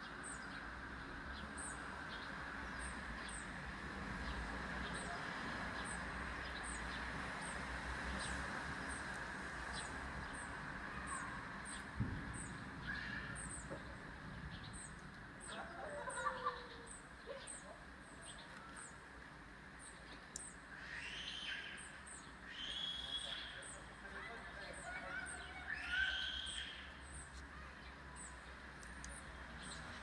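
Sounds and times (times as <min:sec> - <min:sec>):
birds chirping: 0:09.7 - 0:19.1, 0:19.7 - 0:30.0.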